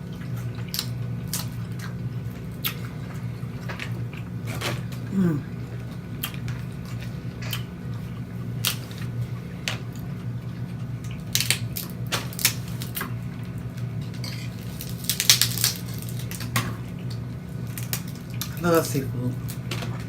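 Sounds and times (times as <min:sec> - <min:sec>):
steady low hum: 0:00.0 - 0:11.5
crab shells cracking: 0:11.2 - 0:13.1, 0:14.6 - 0:16.6.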